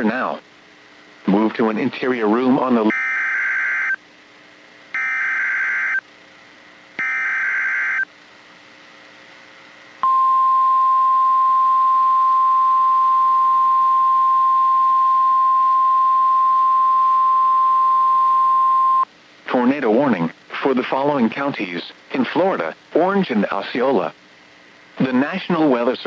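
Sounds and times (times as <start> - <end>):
screeching digital data bursts: 2.9 - 4.0, 5.0 - 6.0, 7.0 - 8.1.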